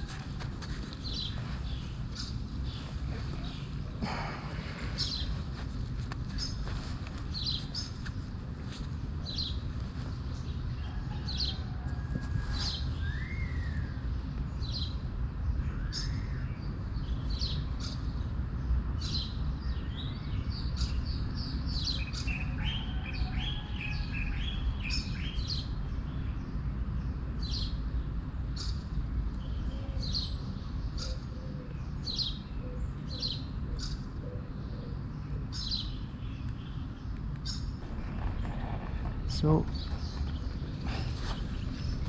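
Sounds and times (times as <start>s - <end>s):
small birds chirping: 0.0s - 11.8s, 12.4s - 42.0s
low rumble: 37.8s - 42.0s.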